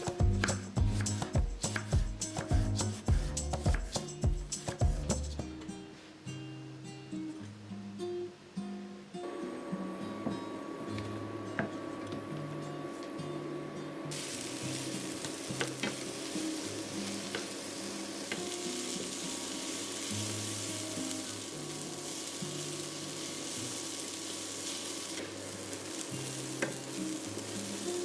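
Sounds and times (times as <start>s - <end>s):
soft background music: 0.0s - 7.3s, 9.4s - 28.0s
onions sizzling in a pan: 9.3s - 28.0s.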